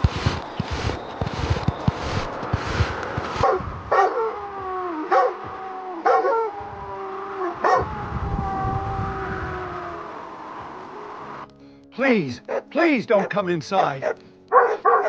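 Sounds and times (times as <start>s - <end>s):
dog whining and yelping: 3.4s - 8.8s.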